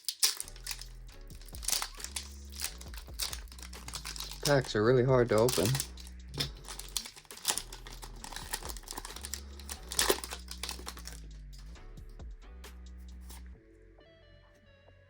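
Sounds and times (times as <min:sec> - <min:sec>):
foil wrapper crinkling: 0:00.0 - 0:11.5.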